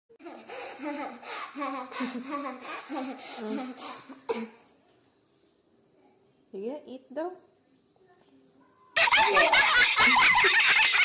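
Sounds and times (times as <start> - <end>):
person laughing: 9.0 - 11.0.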